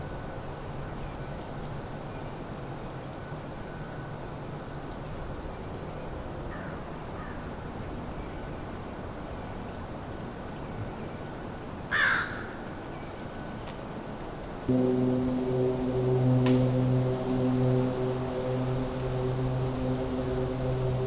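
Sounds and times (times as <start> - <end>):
outdoor background hiss: 14.7 - 21.0.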